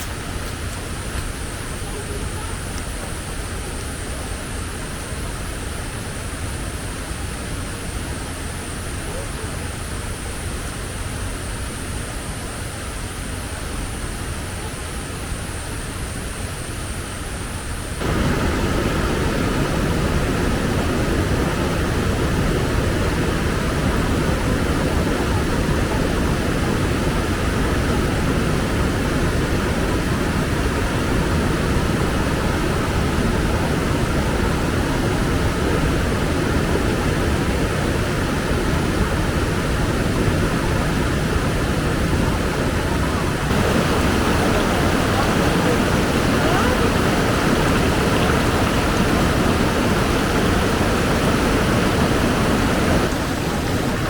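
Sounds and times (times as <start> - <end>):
strong wind blowing: 17.9 - 54.0.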